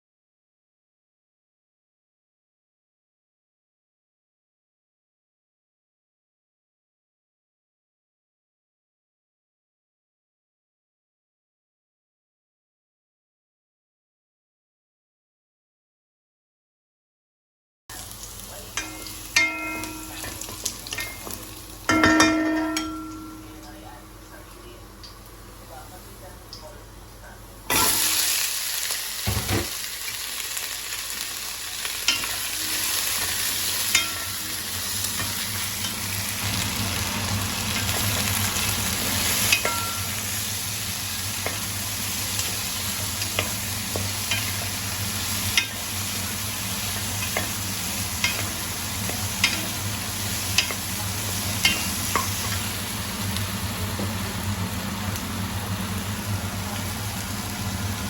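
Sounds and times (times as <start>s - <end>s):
food sizzling in hot oil: 17.9s - 23.7s, 27.7s - 58.0s.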